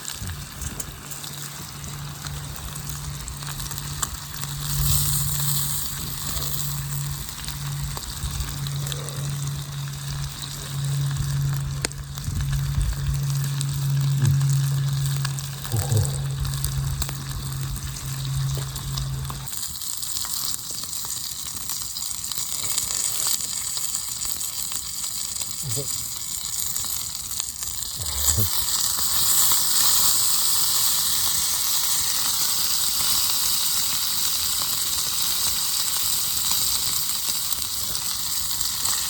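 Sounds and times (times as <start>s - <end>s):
steak sizzling in a pan: 0.0s - 15.6s, 16.2s - 39.0s
fire crackles: 0.0s - 39.0s
low hum: 1.6s - 20.3s.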